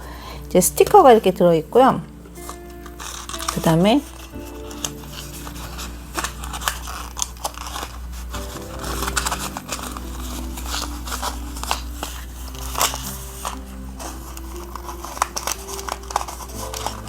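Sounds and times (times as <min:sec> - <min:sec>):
plastic packaging clicking and crinkling: 0:00.0 - 0:17.0
soft background music: 0:00.0 - 0:17.0.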